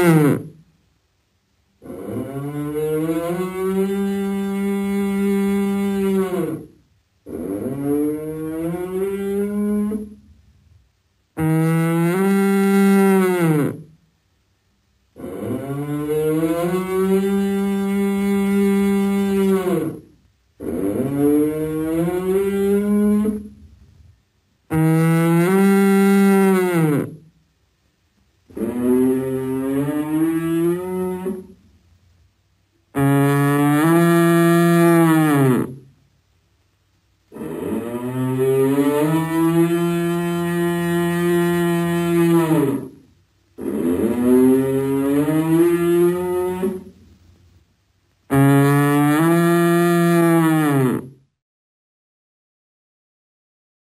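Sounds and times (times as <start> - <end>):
elk bellowing: 15.2 - 23.6, 28.5 - 31.6, 43.6 - 47.0.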